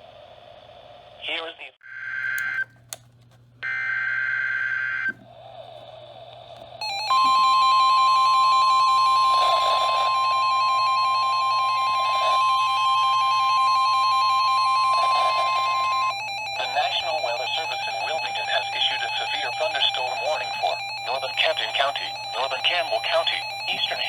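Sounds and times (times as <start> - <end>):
attention alarm tone: 6.8 - 24.0.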